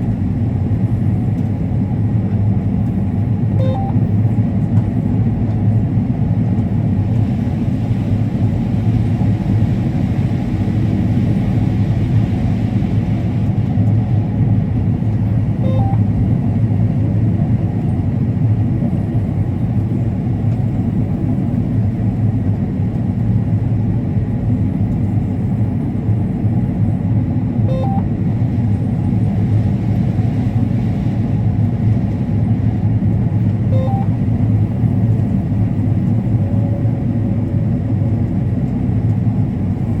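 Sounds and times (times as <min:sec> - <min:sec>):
short beeps: 0:03.6 - 0:04.0, 0:15.6 - 0:16.1, 0:27.7 - 0:28.1, 0:33.7 - 0:34.1.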